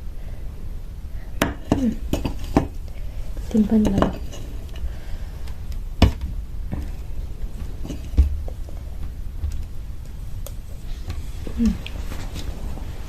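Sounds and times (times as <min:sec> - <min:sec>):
steady low rumble: 0:00.0 - 0:13.0
crunchy eating clicks and knocks: 0:03.7 - 0:11.2.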